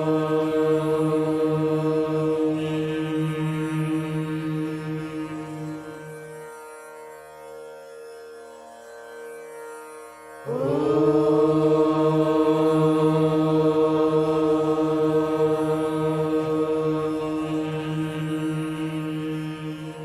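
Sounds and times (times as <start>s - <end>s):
voice chanting long note: 0.0s - 6.3s, 10.4s - 20.0s
steady drone: 10.4s - 20.0s.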